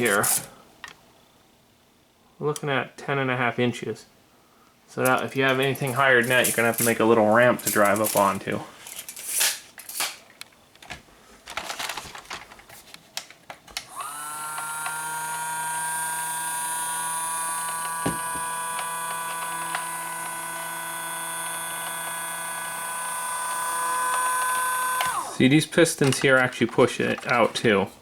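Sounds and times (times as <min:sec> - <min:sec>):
small electric motor whining: 0:13.8 - 0:25.4
handling clicks and rattles: 0:25.0 - 0:27.8.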